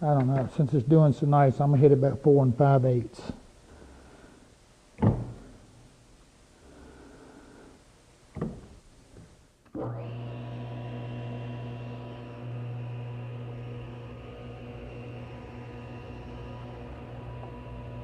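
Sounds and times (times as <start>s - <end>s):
table saw motor humming: 9.8s - 18.0s.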